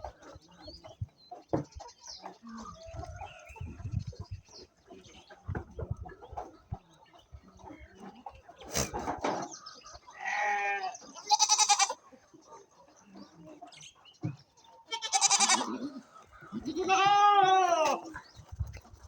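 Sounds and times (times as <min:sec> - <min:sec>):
goats bleating: 0:10.2 - 0:12.0, 0:14.9 - 0:18.2.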